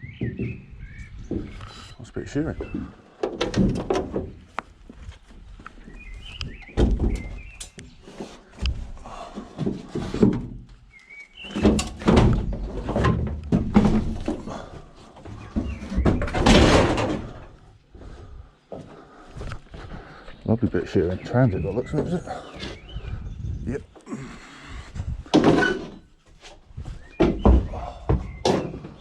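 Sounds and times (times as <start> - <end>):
metal van doors thudding and clanking: 3.3 - 4.4, 15.9 - 17.5.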